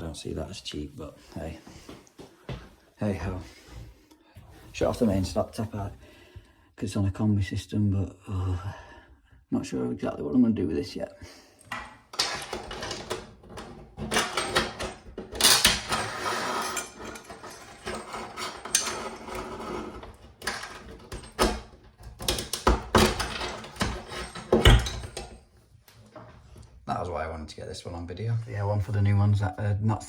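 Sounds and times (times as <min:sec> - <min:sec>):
metal parts clattering: 0:11.7 - 0:25.4.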